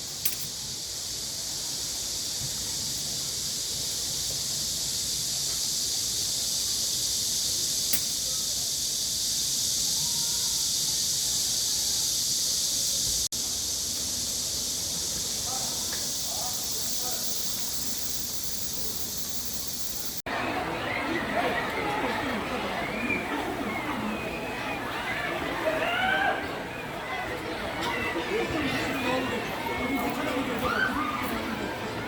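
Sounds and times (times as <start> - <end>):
high-pitched hissing drone: 0.0 - 20.2
sharp click: 7.9 - 8.2.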